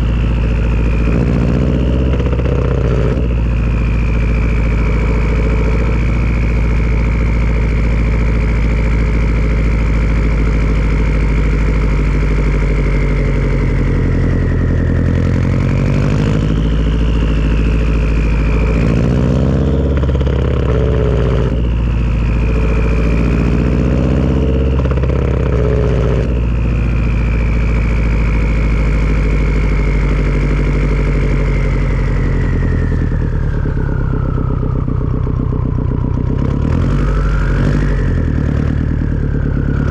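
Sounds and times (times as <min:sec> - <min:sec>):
car engine rumble: 0:00.0 - 0:39.9
turbo whistle: 0:29.2 - 0:39.9.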